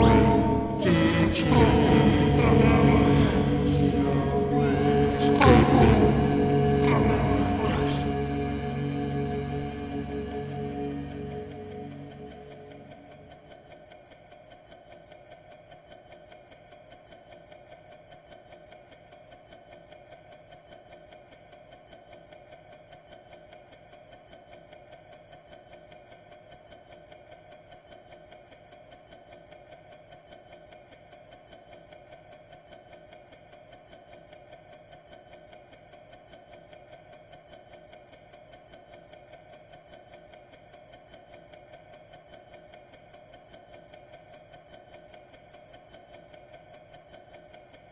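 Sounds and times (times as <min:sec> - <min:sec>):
faint steady hum: 0:00.0 - 0:13.6
clock ticking: 0:00.0 - 0:47.9.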